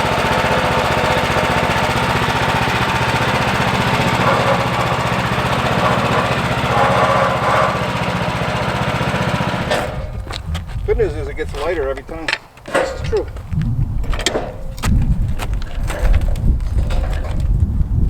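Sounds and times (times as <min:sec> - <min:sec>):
bandsaw blade whine: 0:00.0 - 0:10.4
gasoline engine running: 0:00.0 - 0:18.0.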